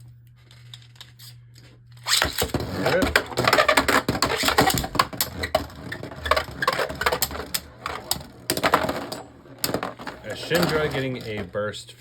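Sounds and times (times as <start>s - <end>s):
spinning tops clashing and scraping: 2.0s - 11.6s.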